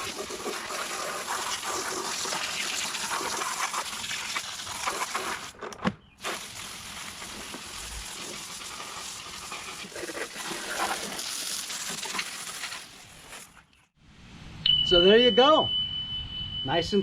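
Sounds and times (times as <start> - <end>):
garden hose spraying water: 0.0 - 5.6, 6.2 - 14.0.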